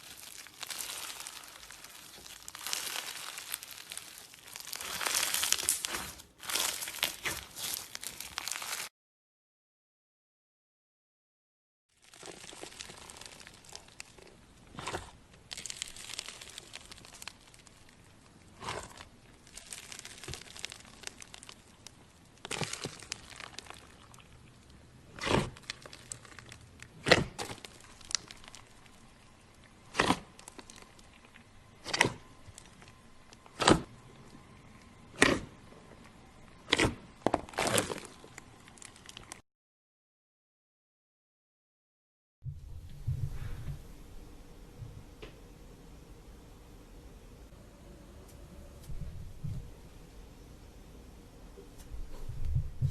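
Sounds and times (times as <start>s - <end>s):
slime squished by hand: 0.0s - 8.9s, 12.0s - 29.1s.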